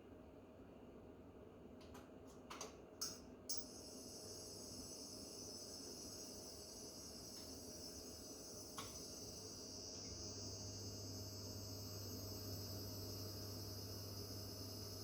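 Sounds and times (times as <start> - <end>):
cooker high-pitched whine: 3.5 - 15.0.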